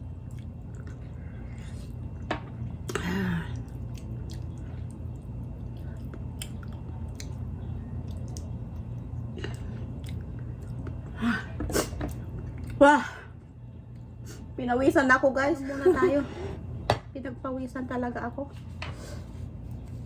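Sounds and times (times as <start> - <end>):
chewing food: 0.2 - 2.3, 3.5 - 11.1.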